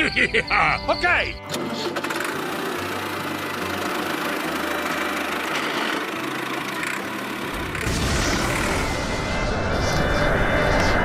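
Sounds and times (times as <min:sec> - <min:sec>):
motor whirring: 0:01.5 - 0:09.1.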